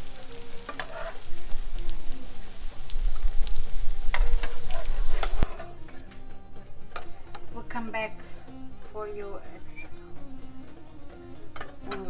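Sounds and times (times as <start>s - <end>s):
pastries deep-frying in hot oil: 0.0s - 5.5s.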